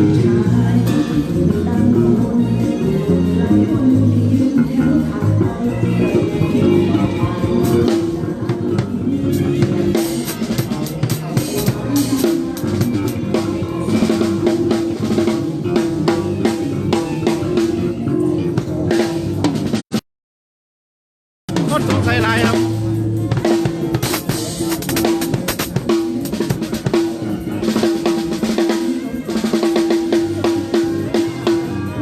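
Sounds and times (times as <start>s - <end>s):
band music: 0.0s - 19.8s, 21.5s - 32.0s
drum kit playing a busy beat: 0.0s - 20.0s, 21.5s - 32.0s.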